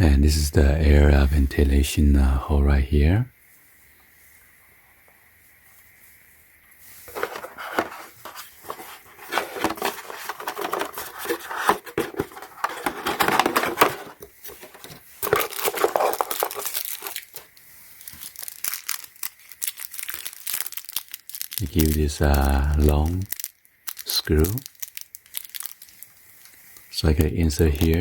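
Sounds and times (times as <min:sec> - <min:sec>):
plastic packaging crinkling: 0:07.0 - 0:28.0.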